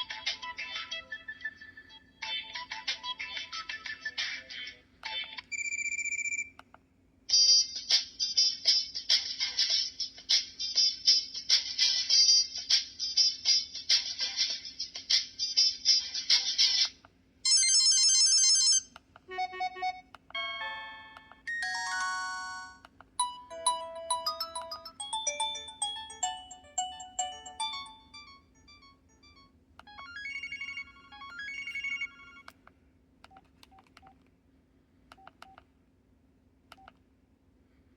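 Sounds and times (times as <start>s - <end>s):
electronic phone ringtones: 5.5s - 6.5s, 17.5s - 32.5s.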